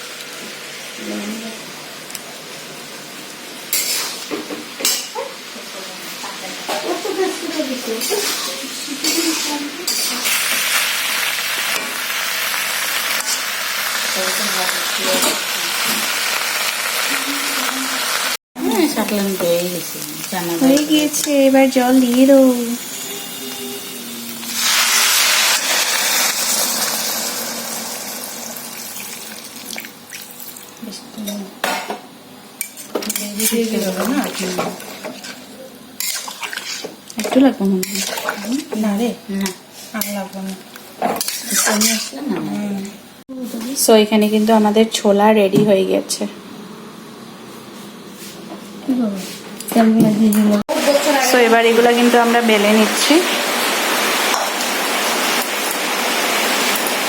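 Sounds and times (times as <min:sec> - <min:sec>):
food sizzling in a pan: 0:00.0 - 0:31.9, 0:32.5 - 0:57.0.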